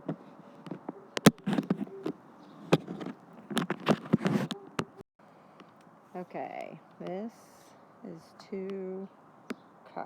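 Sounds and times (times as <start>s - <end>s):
sharp knocks and clicks: 0.0s - 5.0s.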